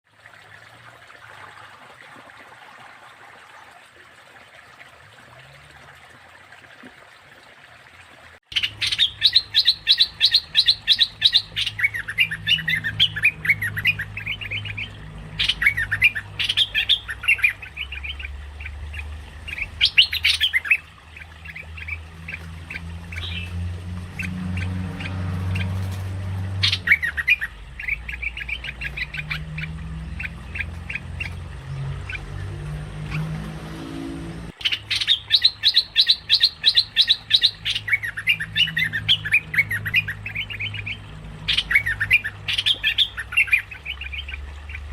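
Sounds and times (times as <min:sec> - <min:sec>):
bird chattering call: 0:08.5 - 0:23.5.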